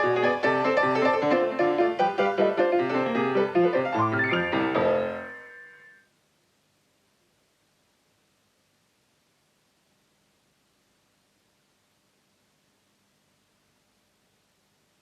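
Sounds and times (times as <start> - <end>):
piano music with rapid notes: 0.0 - 5.9.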